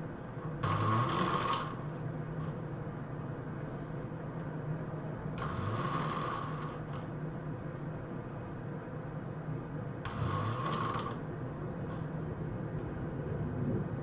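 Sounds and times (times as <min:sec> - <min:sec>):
person snoring heavily: 0:00.6 - 0:02.6, 0:05.4 - 0:07.1, 0:10.0 - 0:11.2.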